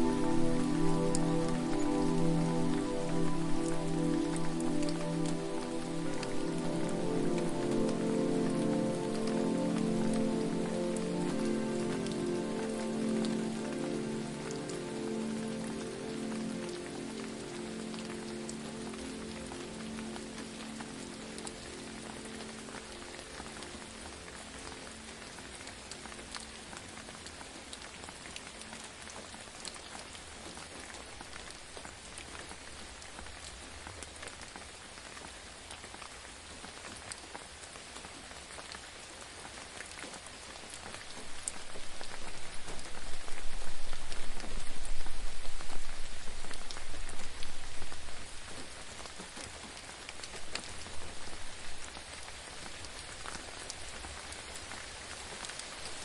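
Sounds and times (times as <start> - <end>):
waterfall hissing: 0.0 - 25.1.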